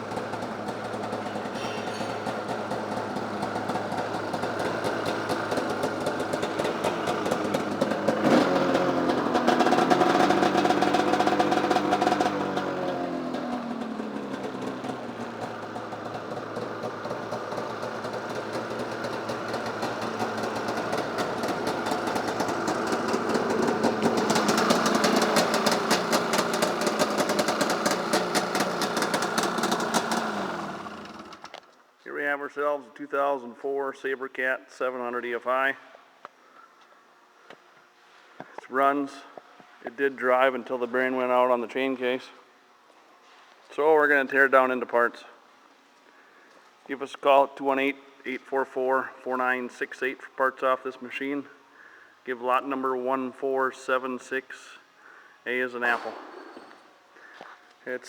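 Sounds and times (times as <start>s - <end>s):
snowmobile engine revving: 3.1s - 31.4s.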